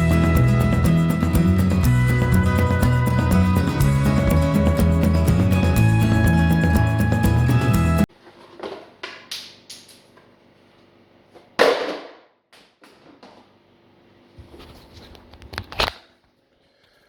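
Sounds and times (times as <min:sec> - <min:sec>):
background music: 0:00.0 - 0:08.1.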